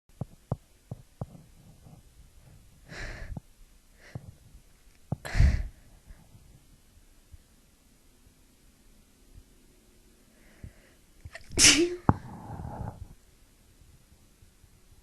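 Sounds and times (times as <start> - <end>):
woman sneezing: 11.6 - 12.1.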